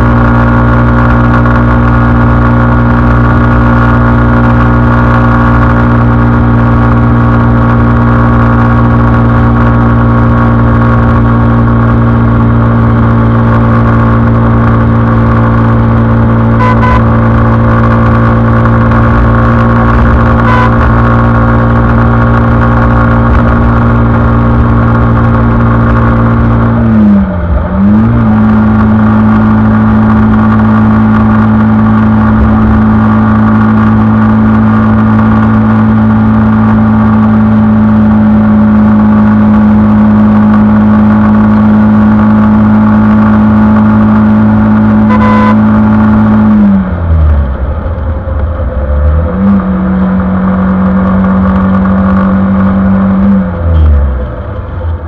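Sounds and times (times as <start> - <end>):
motorcycle engine running: 0.0 - 55.0
short beep: 16.5 - 21.3, 45.0 - 45.8.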